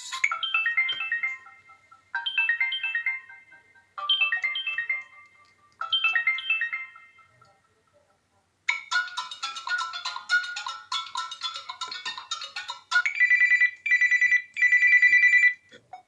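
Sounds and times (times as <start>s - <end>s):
phone ringtone of quick notes: 8.9s - 15.6s.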